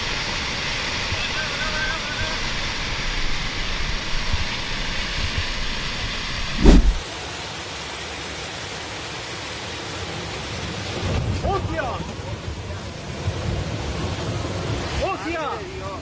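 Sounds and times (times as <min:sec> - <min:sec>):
rushing rumbling noise: 0:06.3 - 0:07.0
loud thump: 0:06.5 - 0:07.0.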